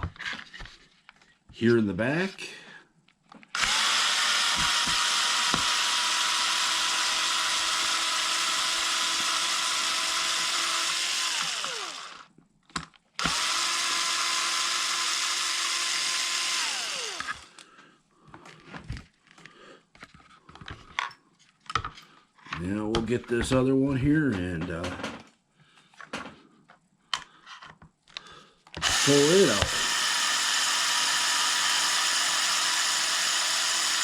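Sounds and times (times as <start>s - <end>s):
electric drill whining: 3.5s - 12.3s, 13.2s - 17.6s, 28.8s - 34.0s.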